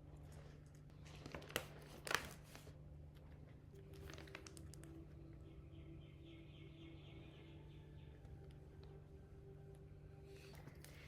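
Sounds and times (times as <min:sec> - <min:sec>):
packaging crinkling: 0:00.6 - 0:05.2
packaging rustling: 0:01.0 - 0:02.8, 0:03.8 - 0:05.0.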